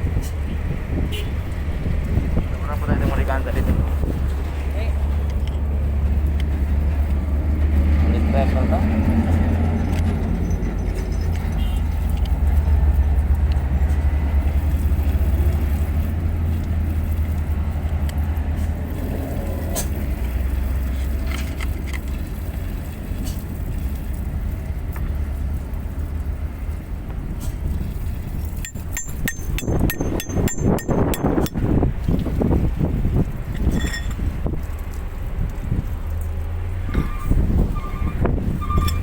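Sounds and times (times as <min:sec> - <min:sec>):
sharp metallic clinks: 0:09.7 - 0:12.2, 0:28.6 - 0:31.7.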